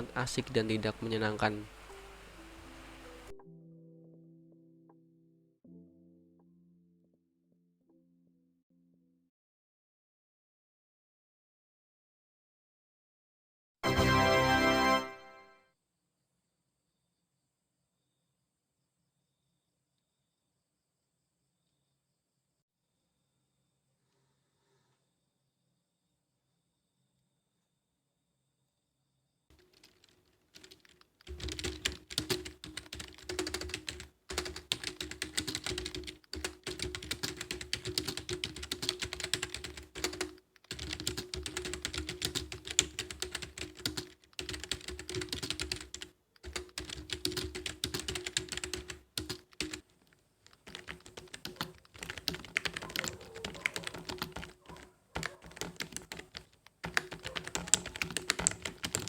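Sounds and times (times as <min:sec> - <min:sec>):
typing on membrane keyboard: 0:29.5 - 0:59.0.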